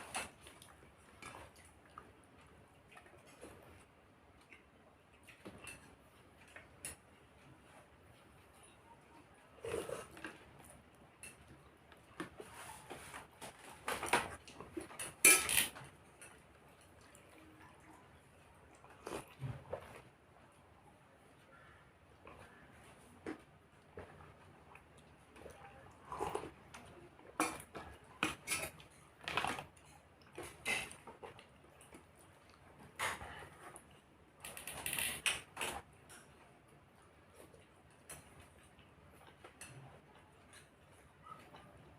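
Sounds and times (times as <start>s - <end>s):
person chewing: 0.0s - 12.7s, 14.4s - 20.1s, 21.4s - 34.0s
dish and utensil clatter: 13.9s - 16.4s
cutlery clinking on a plate: 14.9s - 16.4s.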